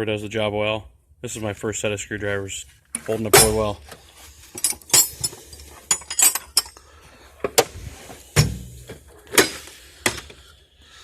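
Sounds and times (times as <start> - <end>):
metal tools clacking: 3.0 - 3.8, 4.5 - 6.8
heavy thud: 8.4 - 8.8.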